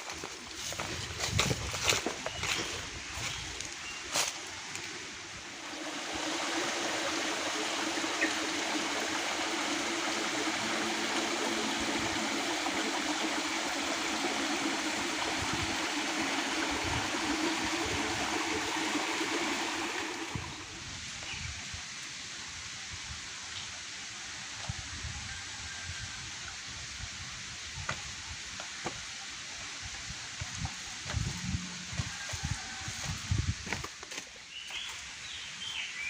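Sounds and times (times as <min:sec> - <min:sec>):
river water rushing: 0:05.1 - 0:20.6.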